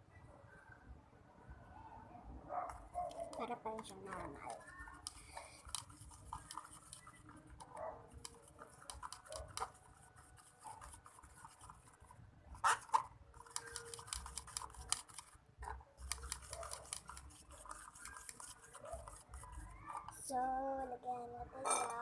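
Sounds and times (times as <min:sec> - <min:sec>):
utensil stirring thick slime: 0:03.0 - 0:20.3.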